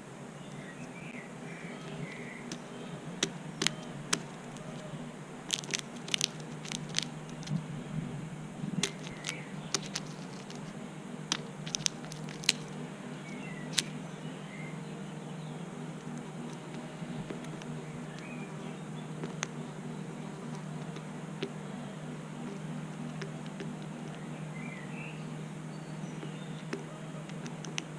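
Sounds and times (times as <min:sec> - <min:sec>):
low hum: 0:00.0 - 0:27.9
crow's beak pecking peanuts: 0:00.4 - 0:07.7, 0:08.6 - 0:14.2, 0:15.5 - 0:27.9
faint high chirps: 0:13.0 - 0:27.4.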